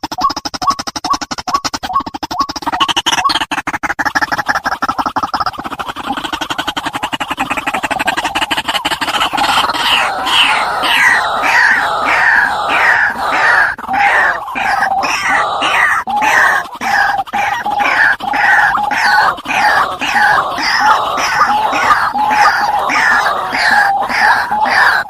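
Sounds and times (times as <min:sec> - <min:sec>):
bird calling harsh falling notes: 0:08.8 - 0:25.0.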